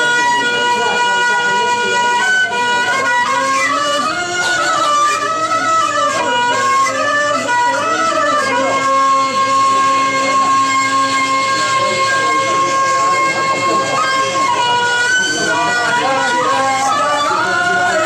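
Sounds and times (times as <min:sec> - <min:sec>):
ornamented melody line: 0:00.0 - 0:18.0.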